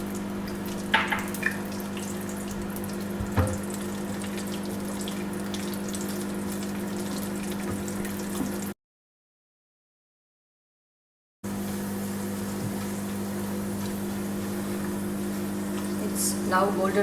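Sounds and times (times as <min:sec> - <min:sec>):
nuts sizzling in hot fat: 0:11.5 - 0:17.0.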